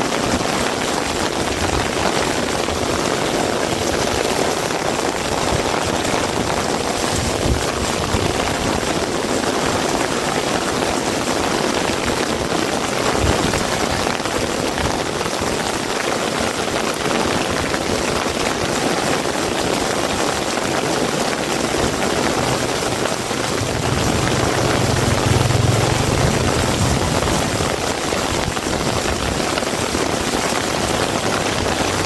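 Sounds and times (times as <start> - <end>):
heavy rain hissing: 19.6 - 32.0
passing vehicle engine rumble: 20.7 - 28.8, 31.1 - 32.0.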